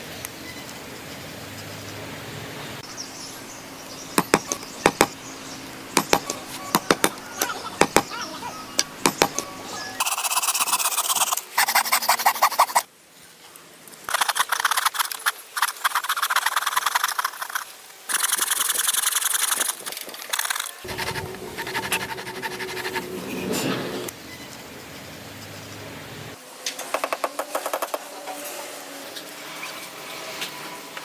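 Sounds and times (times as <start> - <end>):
hand tool scraping wood: 4.2 - 5.2, 6.0 - 8.2, 9.0 - 12.8, 14.1 - 24.1.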